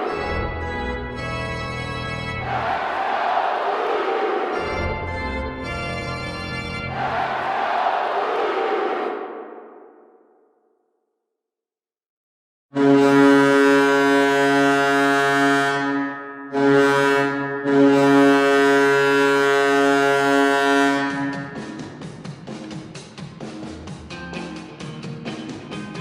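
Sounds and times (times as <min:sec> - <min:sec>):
low goal horn blasts: 0:12.8 - 0:21.9
song with drums: 0:21.3 - 0:26.0.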